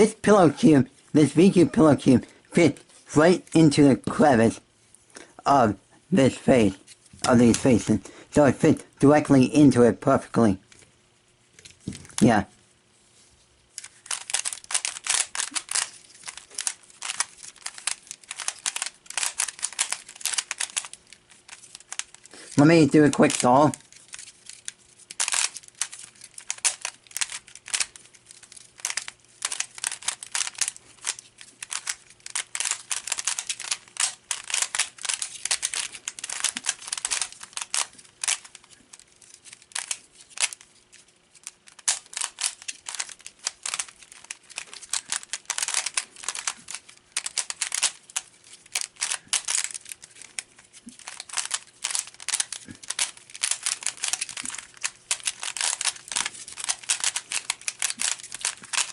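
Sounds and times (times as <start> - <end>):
puzzle cube plastic clicking: 13.8 - 58.9.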